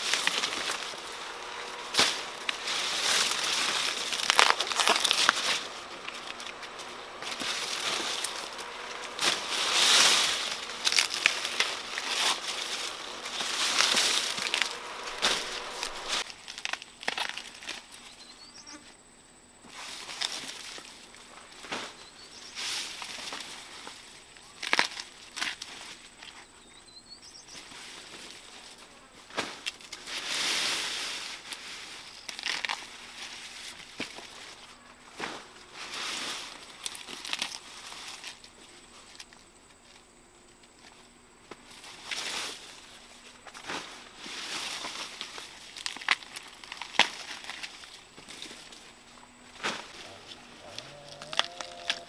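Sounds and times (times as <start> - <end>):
corn ears snapping: 0.0 - 18.2, 22.7 - 26.4, 27.6 - 30.5, 31.1 - 52.0
corn plants rustling: 0.0 - 19.0, 19.6 - 52.0.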